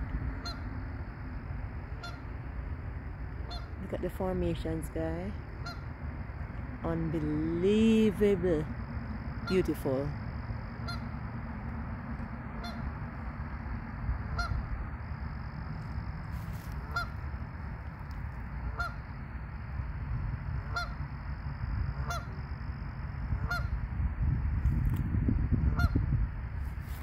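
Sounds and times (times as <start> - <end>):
geese honking: 0.0 - 0.8, 1.9 - 2.4, 3.4 - 4.1, 5.5 - 6.0, 9.4 - 10.1, 10.7 - 11.4, 12.5 - 13.3, 14.3 - 14.7, 16.4 - 17.4, 18.7 - 19.1, 20.6 - 21.0, 22.0 - 22.4, 23.4 - 23.8, 25.7 - 26.0
steady low rumble: 0.0 - 27.0.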